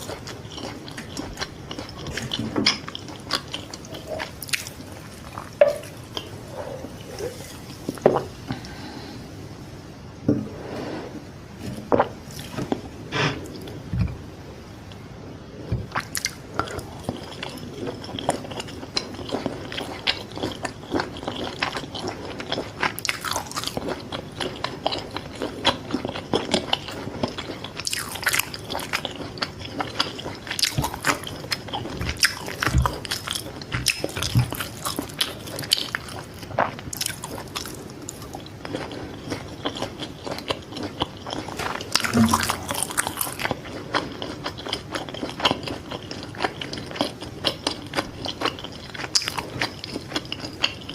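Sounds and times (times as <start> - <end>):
crunchy chewing and biting: 15.9 - 50.9.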